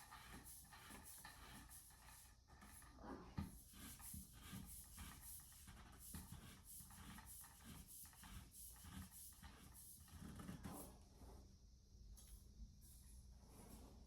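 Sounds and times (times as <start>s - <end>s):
faint scratching and light knocks: 0.0s - 11.5s.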